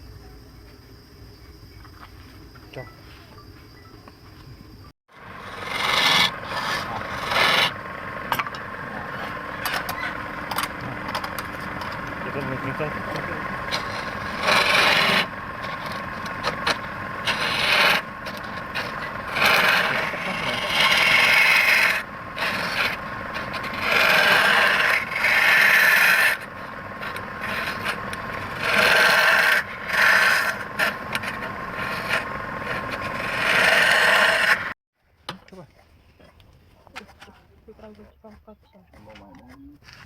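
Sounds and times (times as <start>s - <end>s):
lathe running: 5.2s - 34.8s
tool scraping wood on lathe: 5.2s - 34.8s.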